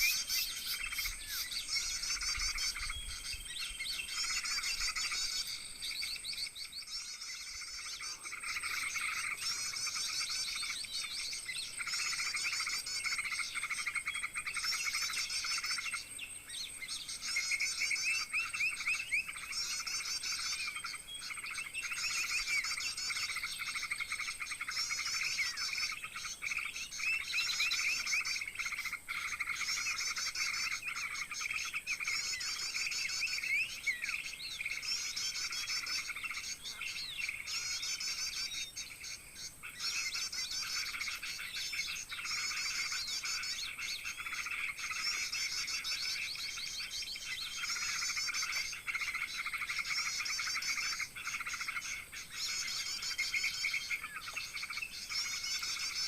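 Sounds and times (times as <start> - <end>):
small birds chirping and trilling: 0.0 - 56.0.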